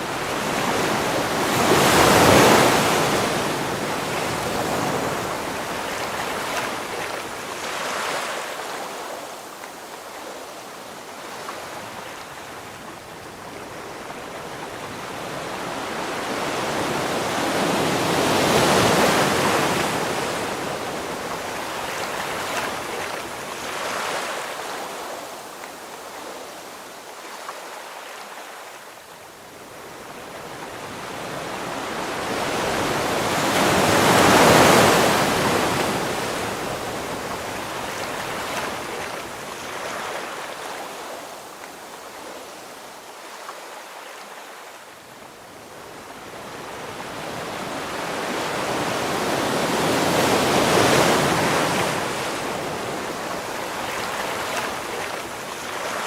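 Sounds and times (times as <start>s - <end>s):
ocean waves breaking: 0.0s - 9.4s, 30.6s - 44.7s, 46.0s - 56.0s.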